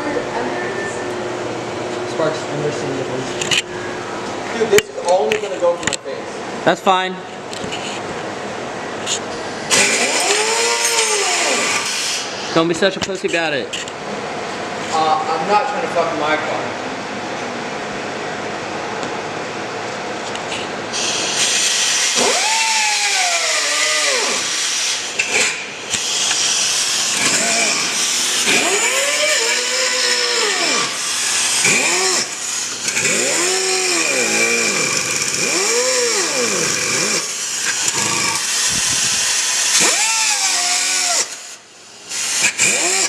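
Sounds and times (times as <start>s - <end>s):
angle grinder cutting metal: 9.7s - 12.2s, 21.0s - 43.0s.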